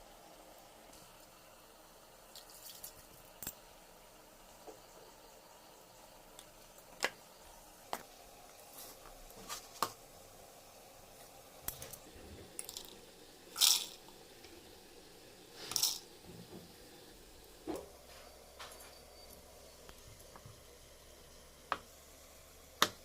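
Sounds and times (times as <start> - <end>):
rustling splashing noises: 2.3 - 3.2.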